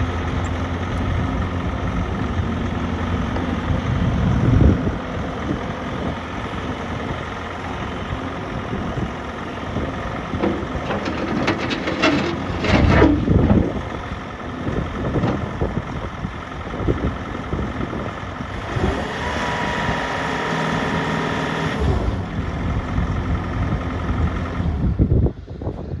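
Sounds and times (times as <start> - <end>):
diesel engine running: 0.0 - 25.8
clanking knocks: 10.3 - 13.9.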